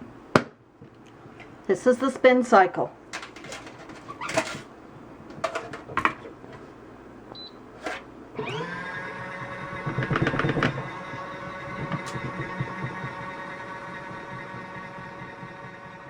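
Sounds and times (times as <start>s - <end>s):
washing machine motor humming: 3.0s - 16.0s
clicks and knocks: 3.1s - 4.7s, 5.3s - 6.7s
washing machine rattling: 3.1s - 6.7s, 7.8s - 8.1s, 9.5s - 15.6s.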